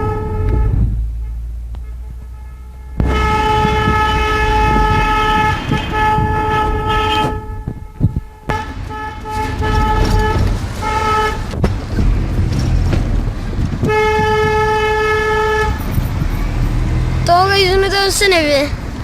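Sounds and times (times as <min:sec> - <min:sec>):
car horn honking: 0:00.0 - 0:11.6, 0:13.8 - 0:16.2
road and engine noise: 0:00.0 - 0:19.0.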